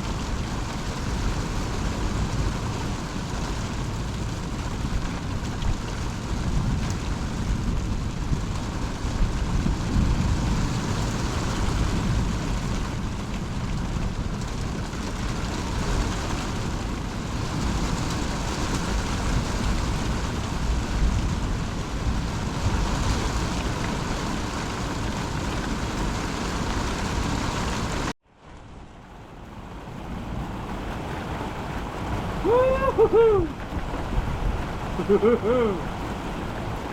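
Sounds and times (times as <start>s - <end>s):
heavy rain: 0.0s - 36.9s
wind: 0.0s - 36.9s
low thunder rumble: 30.5s - 36.9s.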